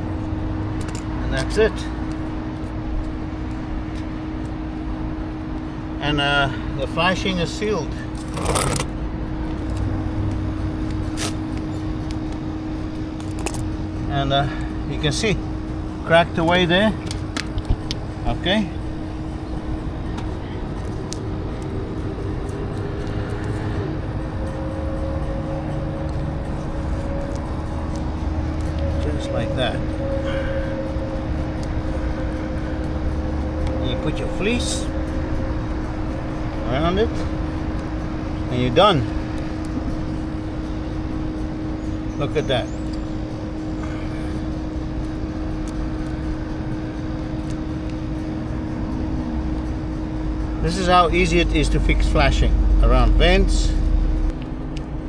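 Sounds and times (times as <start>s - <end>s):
low mechanical drone: 0.0s - 55.0s
higher hum: 7.8s - 55.0s
low rumble: 43.0s - 55.0s.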